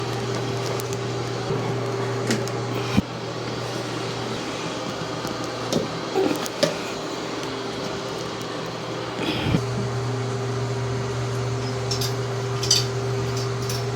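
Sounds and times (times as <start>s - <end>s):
spin scrubber motor humming: 0.0s - 6.2s, 9.2s - 13.9s.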